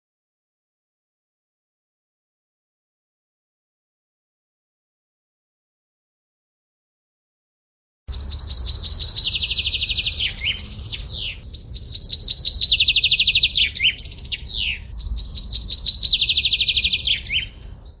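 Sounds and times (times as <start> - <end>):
songbird singing trill: 8.1 - 18.0.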